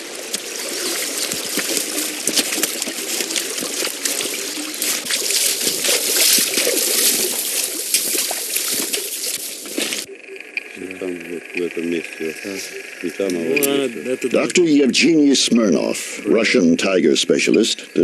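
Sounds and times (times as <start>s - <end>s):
running water trickling and splashing: 0.0s - 10.1s.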